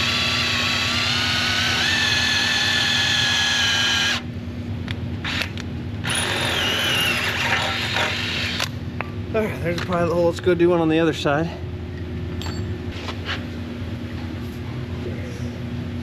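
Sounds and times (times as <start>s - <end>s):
power drill boring into steel: 0.0s - 4.2s, 6.1s - 8.7s.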